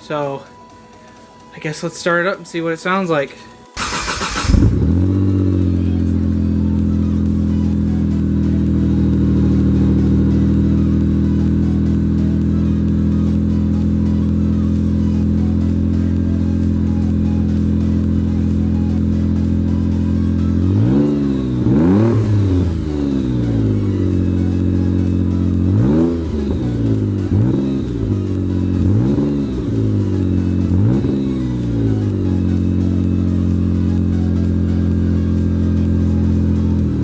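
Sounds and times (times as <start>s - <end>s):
turbocharged car engine revving: 3.8s - 37.0s.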